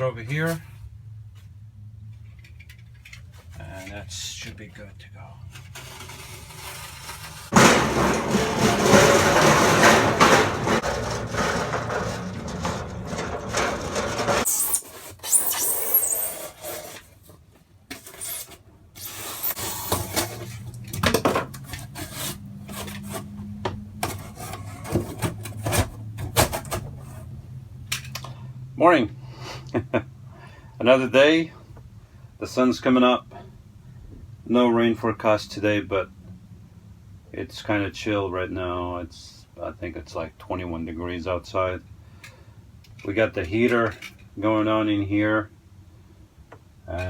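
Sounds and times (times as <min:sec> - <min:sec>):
foam board rubbing and scraping: 0:05.7 - 0:17.3, 0:18.0 - 0:20.6, 0:21.6 - 0:23.4, 0:24.0 - 0:27.3.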